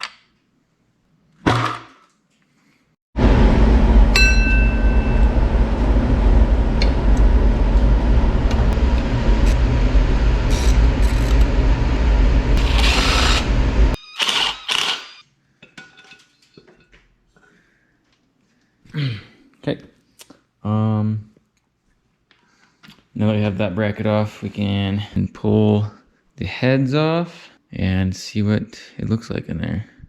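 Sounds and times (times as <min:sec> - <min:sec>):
handheld power tool running: 0:12.6 - 0:15.2.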